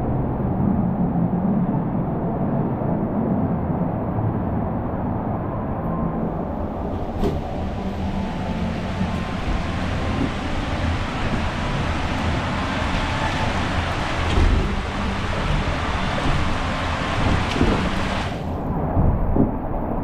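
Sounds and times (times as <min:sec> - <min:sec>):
raft sliding through tube: 0:06.2 - 0:18.9
rushing water: 0:06.2 - 0:19.2
low thumps: 0:06.2 - 0:19.6.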